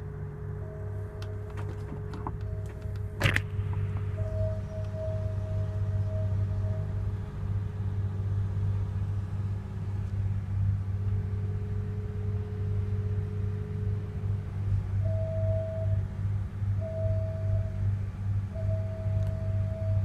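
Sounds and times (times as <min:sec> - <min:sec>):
fog horns sounding: 0:00.6 - 0:08.5
low rumble: 0:00.6 - 0:20.0.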